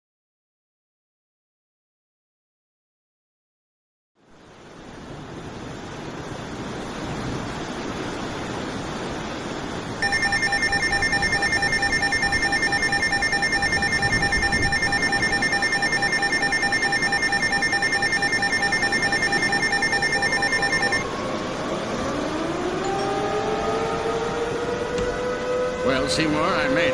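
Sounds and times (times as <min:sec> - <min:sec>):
pulsing electronic alarm tone: 0:10.0 - 0:21.0
warning siren winding up: 0:10.0 - 0:21.0.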